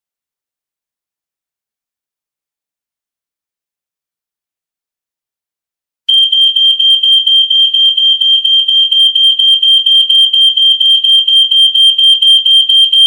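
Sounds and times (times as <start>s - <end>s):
smoke alarm pulsing tone: 6.1s - 13.0s.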